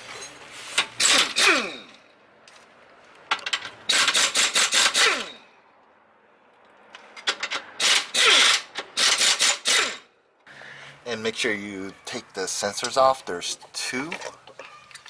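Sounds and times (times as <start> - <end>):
impact wrench hammering: 7.8 - 10.0.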